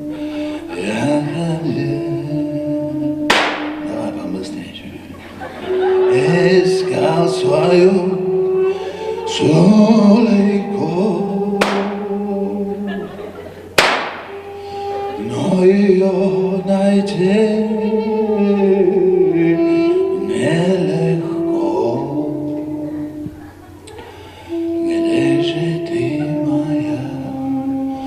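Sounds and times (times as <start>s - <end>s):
person singing unaccompanied: 0.0s - 28.0s
sharp knocks: 3.3s - 3.8s, 11.6s - 12.0s, 13.8s - 14.3s.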